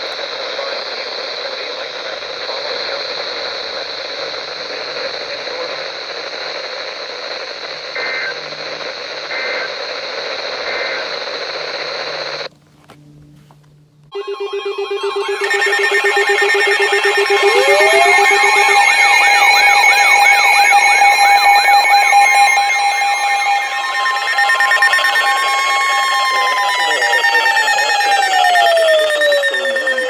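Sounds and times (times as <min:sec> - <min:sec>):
radio static hiss: 0:00.0 - 0:12.5, 0:14.2 - 0:30.0
faint digital data bursts: 0:14.2 - 0:30.0
warbling buzzy alert tone: 0:14.2 - 0:30.0.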